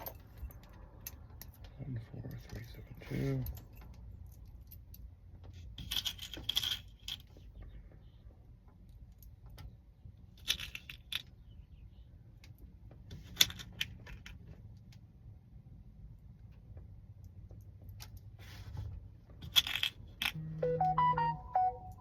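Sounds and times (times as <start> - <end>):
small metal parts clinking: 3.4 - 7.3, 10.4 - 11.3, 19.4 - 20.4.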